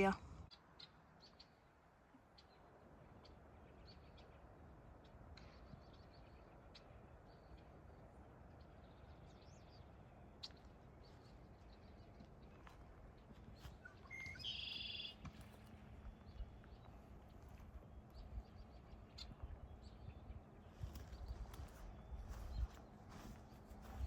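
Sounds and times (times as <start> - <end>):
faint bird chirps: 13.6 - 23.3.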